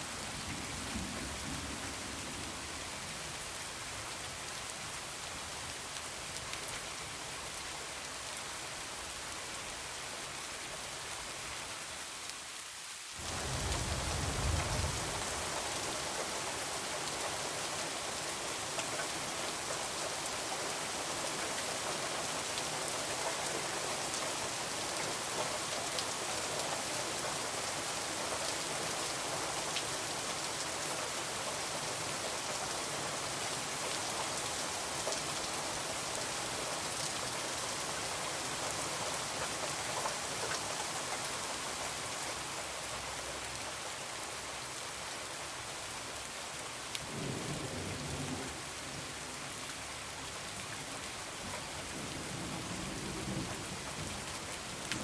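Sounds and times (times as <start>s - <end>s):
heavy rain falling: 0.0s - 55.0s
thunder rumbling: 13.3s - 15.3s.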